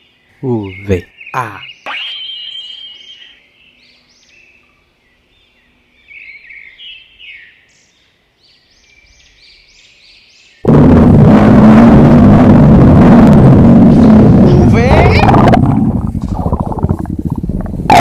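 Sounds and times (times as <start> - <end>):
high bird-like chirping: 0.6 - 4.5
sudden loud noise: 10.6 - 18.0.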